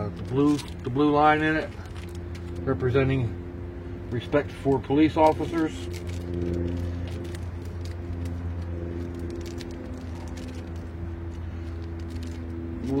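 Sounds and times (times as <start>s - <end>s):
low mechanical hum: 0.0s - 13.0s
rustles: 5.2s - 13.0s.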